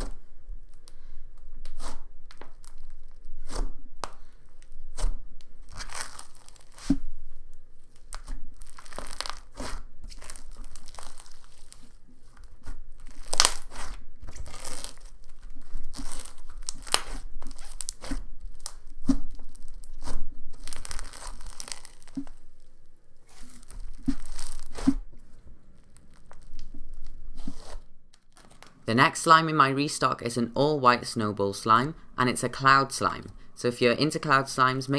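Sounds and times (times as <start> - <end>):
slime crackling and tearing: 1.6 - 28.8
slime popping: 4.9 - 7.1, 7.9 - 28.8.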